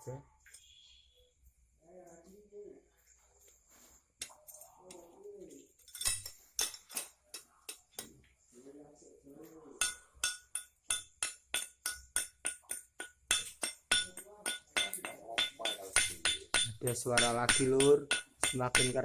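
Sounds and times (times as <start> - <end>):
sharp clinking knocks: 9.8 - 19.0.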